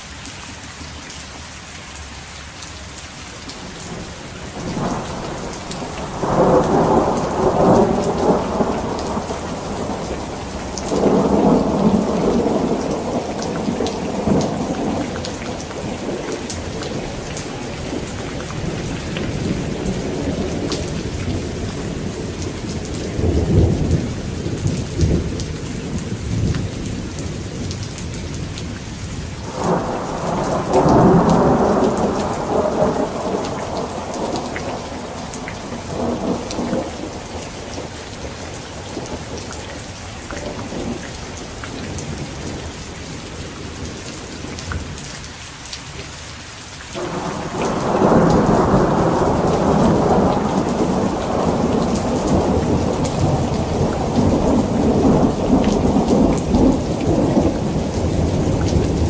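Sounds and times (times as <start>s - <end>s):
steady rain: 0.0s - 59.0s
rolling thunder: 3.8s - 28.8s, 29.4s - 39.4s, 47.0s - 59.0s.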